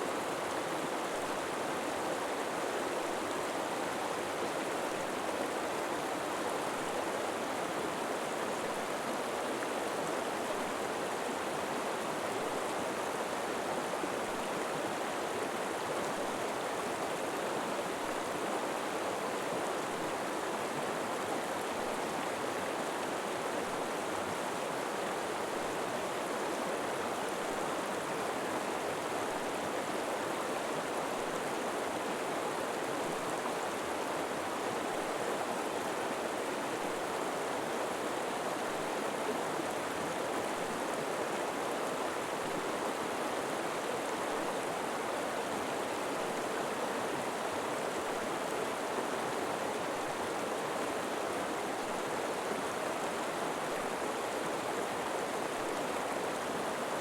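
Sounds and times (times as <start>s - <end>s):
river water flowing over rocks: 0.1s - 57.0s.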